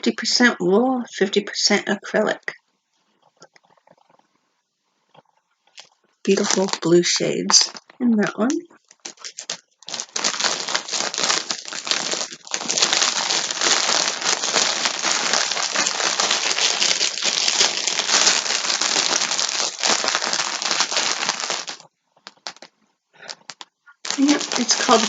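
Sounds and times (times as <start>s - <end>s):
plastic packaging crinkling: 5.7s - 25.0s.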